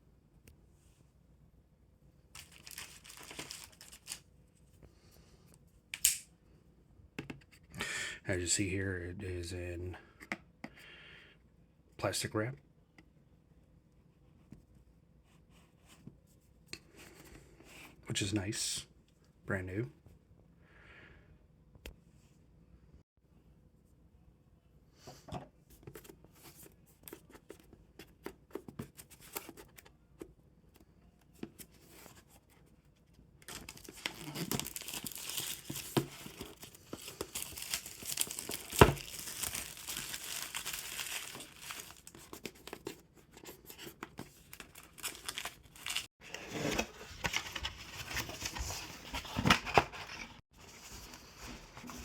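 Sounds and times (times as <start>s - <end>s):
shrink wrap tearing and crinkling: 2.4s - 4.2s, 33.5s - 42.2s
sharp snap: 6.0s - 6.3s.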